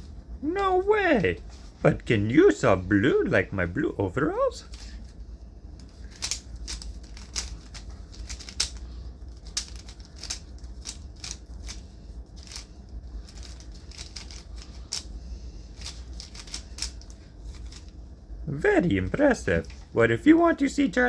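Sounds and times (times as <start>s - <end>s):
low steady hum: 0.0s - 21.0s
puzzle cube clicking: 6.0s - 8.8s, 9.4s - 11.8s, 15.8s - 17.8s.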